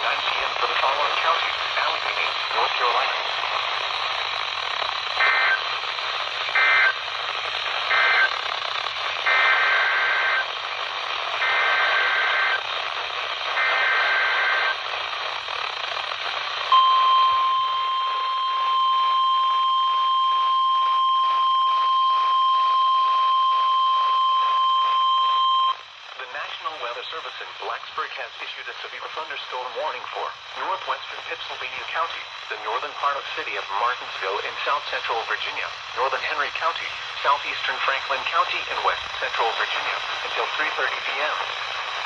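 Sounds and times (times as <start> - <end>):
static hiss: 0.0 - 42.0
steady alarm tone: 3.2 - 10.7, 11.3 - 12.7, 13.3 - 14.9, 15.6 - 25.9.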